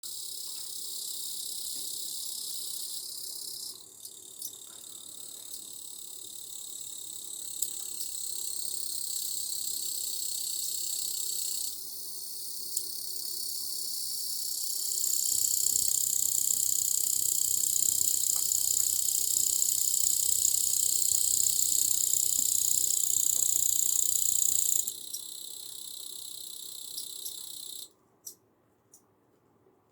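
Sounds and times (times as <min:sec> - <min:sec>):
insect shrill song: 0:00.1 - 0:28.4.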